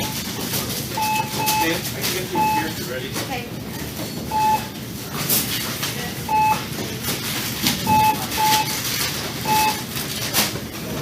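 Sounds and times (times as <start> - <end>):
cash register beeps: 0.0 - 0.3, 0.9 - 3.0, 4.3 - 4.8, 6.2 - 6.8, 7.8 - 10.0
clicks and rustle of goods: 0.0 - 4.3, 5.1 - 11.0.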